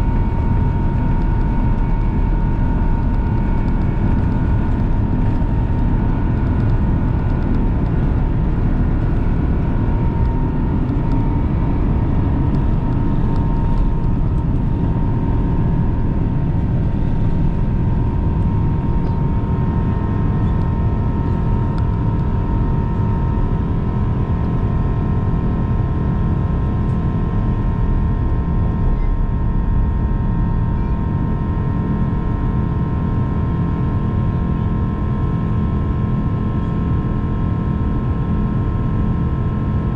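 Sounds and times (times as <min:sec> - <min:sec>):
steady whining tones: 0:00.0 - 0:24.4
jet engines: 0:00.0 - 0:39.9
loud airflow rumble: 0:00.0 - 0:39.9.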